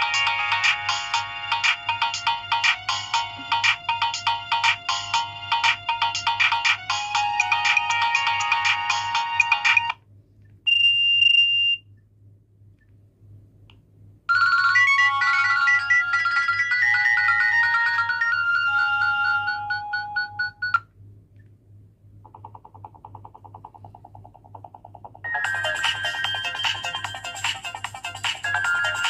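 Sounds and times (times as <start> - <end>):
ringtone from phone loudspeaker: 0.0 - 10.0, 14.3 - 20.8, 25.3 - 29.0.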